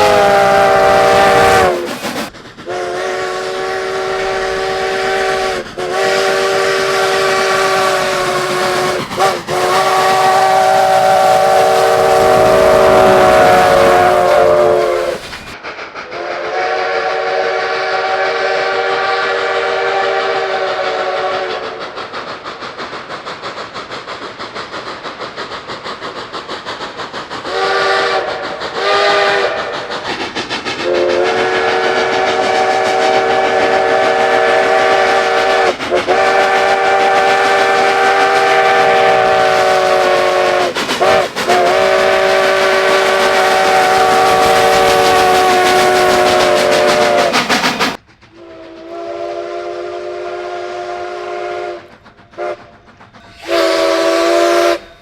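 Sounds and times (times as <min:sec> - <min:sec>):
rhythmic pulsing of passing train: 0:00.0 - 0:55.0
locomotive chime horn: 0:53.3 - 0:55.0.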